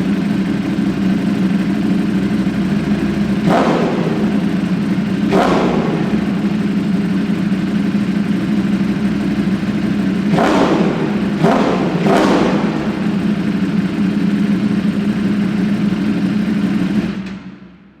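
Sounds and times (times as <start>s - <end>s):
motorcycle engine idling and revving: 0.0s - 18.0s.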